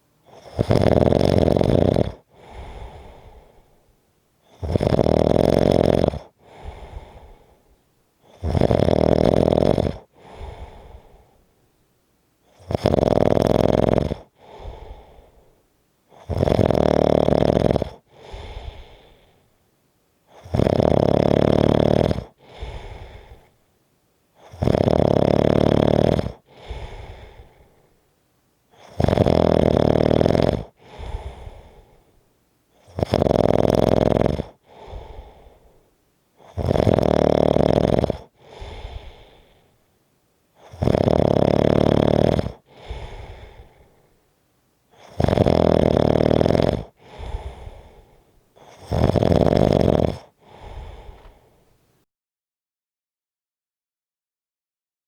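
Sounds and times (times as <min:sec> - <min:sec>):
person snoring heavily: 0:00.3 - 0:03.7, 0:04.4 - 0:07.6, 0:08.2 - 0:11.4, 0:12.5 - 0:15.5, 0:16.1 - 0:19.4, 0:20.3 - 0:23.5, 0:24.4 - 0:27.8, 0:28.7 - 0:32.0, 0:32.8 - 0:39.7, 0:40.6 - 0:44.1, 0:44.9 - 0:51.7
soft breath: 0:02.2 - 0:04.7, 0:06.3 - 0:08.4, 0:10.0 - 0:11.7, 0:14.2 - 0:16.3, 0:17.8 - 0:20.5, 0:22.2 - 0:23.7, 0:26.3 - 0:29.0, 0:30.7 - 0:33.0, 0:34.4 - 0:36.6, 0:38.1 - 0:39.9, 0:42.4 - 0:45.3, 0:46.7 - 0:49.2, 0:50.1 - 0:52.1.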